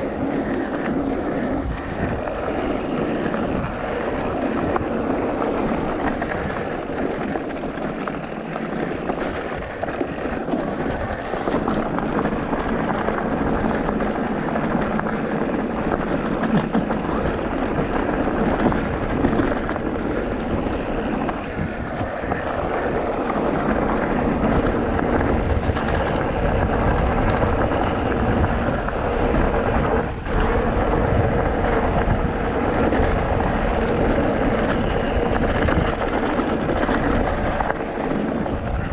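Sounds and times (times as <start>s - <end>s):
vehicle engine running: 0.0s - 21.6s, 22.2s - 38.9s
wind on microphone: 0.0s - 38.9s.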